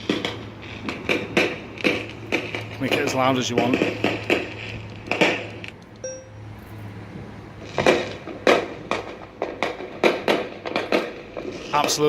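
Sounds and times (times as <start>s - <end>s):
fireworks bangs through small speakers: 0.0s - 5.7s, 7.7s - 12.0s
brief ringing ping: 6.0s - 6.6s.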